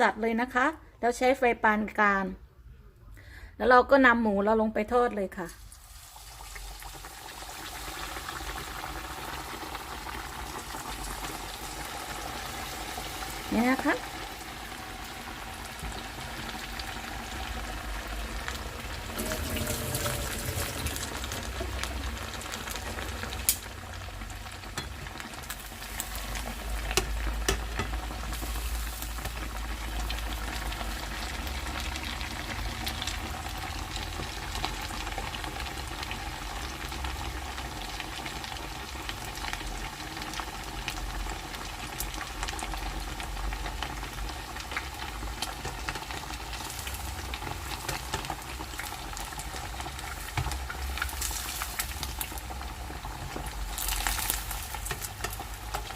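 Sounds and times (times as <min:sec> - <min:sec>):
meat sizzling in hot oil: 0:05.5 - 0:55.9.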